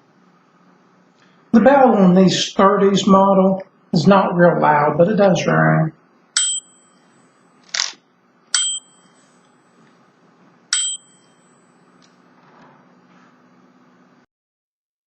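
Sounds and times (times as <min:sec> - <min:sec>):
typewriter bell ding: 0:08.6 - 0:09.4, 0:10.7 - 0:11.8.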